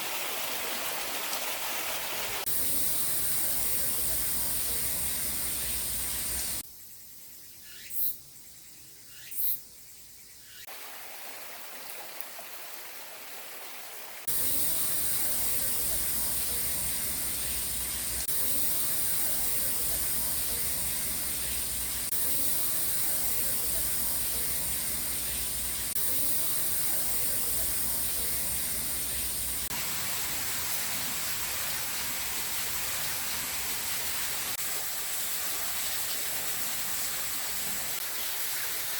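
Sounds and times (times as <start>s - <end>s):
stream water rushing: 0.0s - 2.5s, 10.7s - 38.9s.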